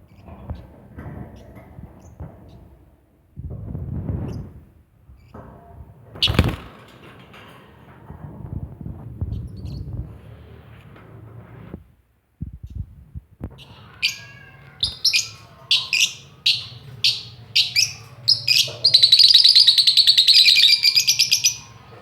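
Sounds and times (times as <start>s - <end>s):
bird chirping and chattering: 13.6s - 21.9s.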